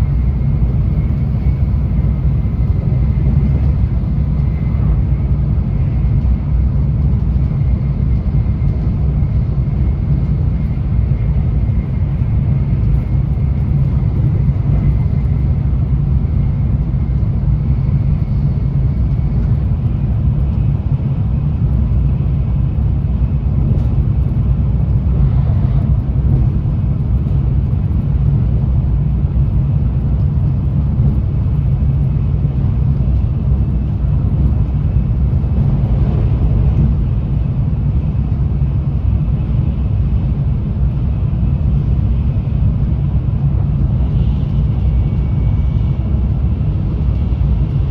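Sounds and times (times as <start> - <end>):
train wheels rumbling on rail: 0.0 - 47.9.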